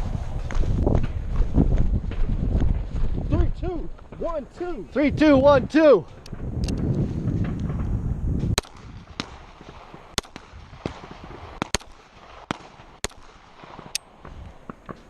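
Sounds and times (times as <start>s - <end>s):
wind rumble on microphone: 0.0s - 11.6s
handgun shots: 8.6s - 9.4s, 11.6s - 14.1s.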